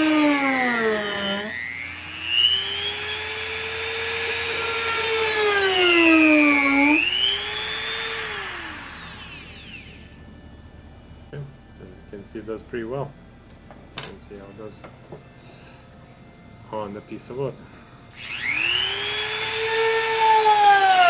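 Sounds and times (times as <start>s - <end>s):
rotary tool whine on wood: 0.0s - 21.0s.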